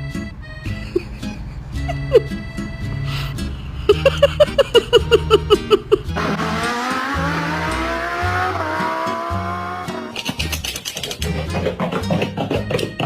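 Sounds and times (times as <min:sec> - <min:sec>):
staccato pitched notes: 0:00.1 - 0:13.0
pulsing bass line: 0:05.2 - 0:10.2
rising whine: 0:06.2 - 0:10.1.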